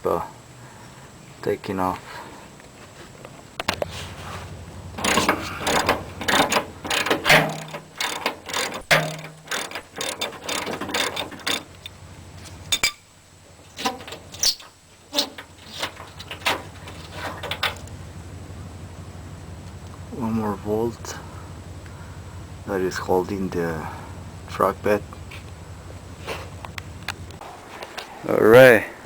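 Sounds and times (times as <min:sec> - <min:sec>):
ratchet wrench clicking: 0:05.0 - 0:12.0.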